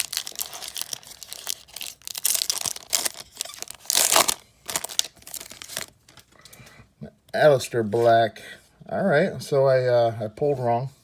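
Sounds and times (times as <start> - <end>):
wrapper tearing and crinkling: 0.0 - 6.4.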